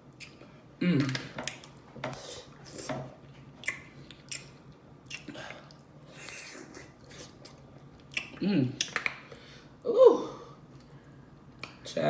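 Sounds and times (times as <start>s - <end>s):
wet chewing and lip-smacking: 3.6s - 5.9s, 6.7s - 9.2s.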